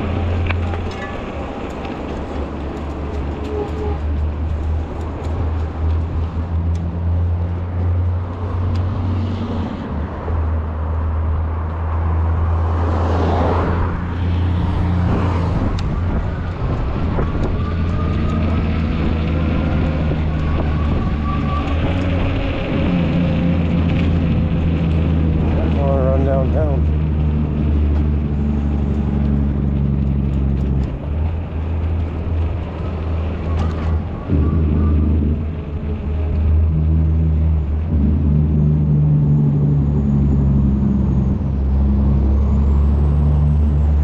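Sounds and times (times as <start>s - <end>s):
low traffic rumble: 0.0s - 44.0s
vehicle passing: 0.0s - 44.0s.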